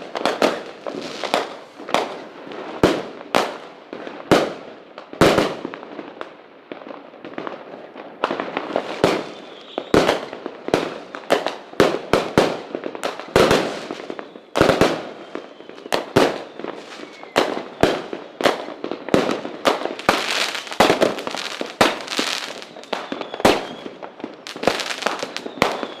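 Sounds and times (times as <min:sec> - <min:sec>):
fireworks bangs with crackle: 0:00.0 - 0:26.0.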